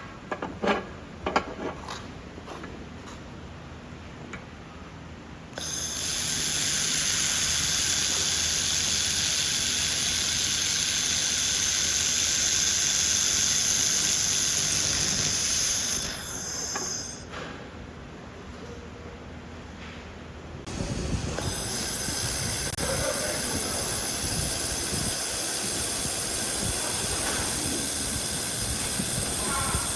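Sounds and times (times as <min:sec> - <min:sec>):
laser machine hissing and whining: 0:05.6 - 0:17.2, 0:20.7 - 0:29.9.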